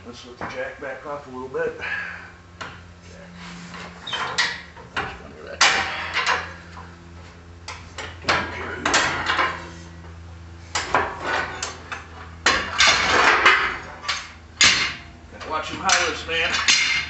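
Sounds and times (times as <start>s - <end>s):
jack clanking metal on metal: 4.0s - 6.6s, 8.0s - 9.7s, 10.7s - 17.0s.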